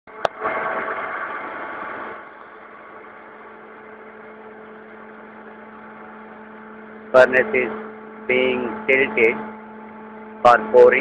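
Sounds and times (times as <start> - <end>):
steady machine hum: 0.1 - 11.0.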